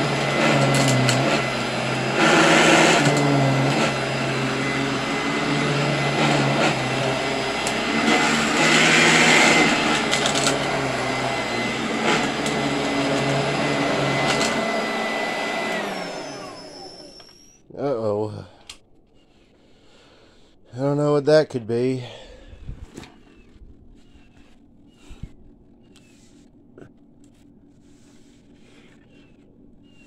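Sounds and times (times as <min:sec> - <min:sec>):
suction rushes: 0:00.0 - 0:17.2
motor winding down: 0:00.0 - 0:17.6
vacuum cleaner whining: 0:00.0 - 0:17.7.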